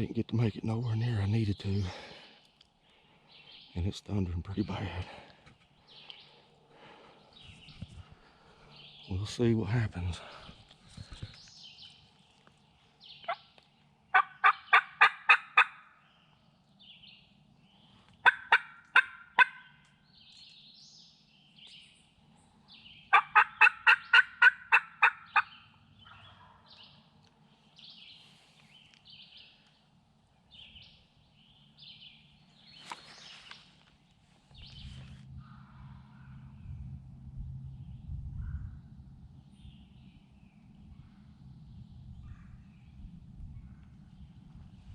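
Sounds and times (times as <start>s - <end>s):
small birds chirping: 0.0s - 15.0s, 15.9s - 19.0s, 19.6s - 24.3s, 25.0s - 44.9s
turkey yelping: 14.1s - 15.9s, 18.2s - 19.8s, 23.1s - 26.7s.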